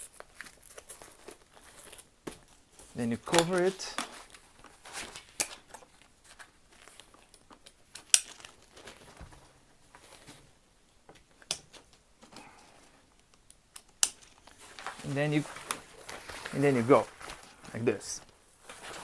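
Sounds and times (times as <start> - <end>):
backpack fabric rustling: 14.4 - 17.7, 18.5 - 19.0.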